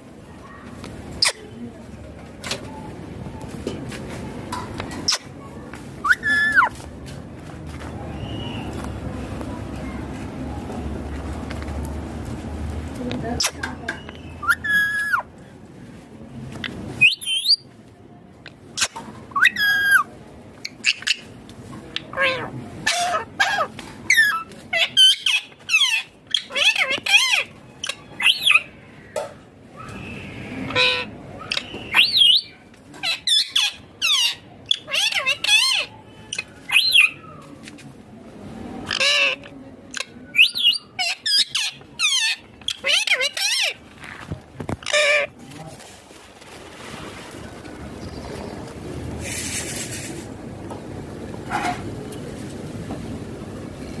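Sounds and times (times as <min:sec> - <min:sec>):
parakeet squawking: 0:06.0 - 0:06.7, 0:13.4 - 0:15.3, 0:22.1 - 0:28.7, 0:30.7 - 0:37.2, 0:38.9 - 0:43.8, 0:44.8 - 0:45.3
harsh parakeet squawk: 0:22.1 - 0:27.5.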